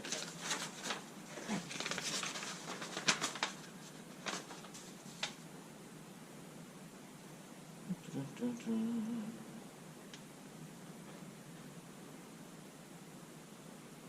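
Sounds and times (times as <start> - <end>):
rustling: 0.0 - 5.5.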